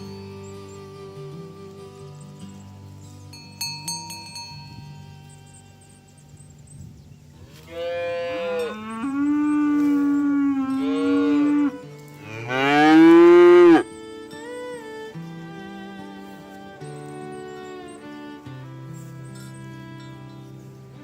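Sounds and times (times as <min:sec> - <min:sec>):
faint background music: 0:00.0 - 0:21.0
oxen mooing: 0:07.4 - 0:13.8.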